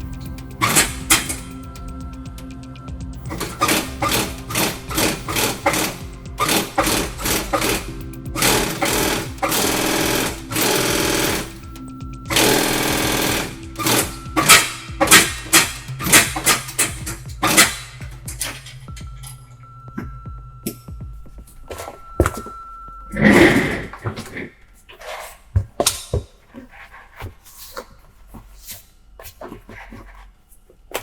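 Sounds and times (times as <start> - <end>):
sewing machine stitching leather: 0.6 - 1.4, 3.3 - 11.7, 12.3 - 18.0.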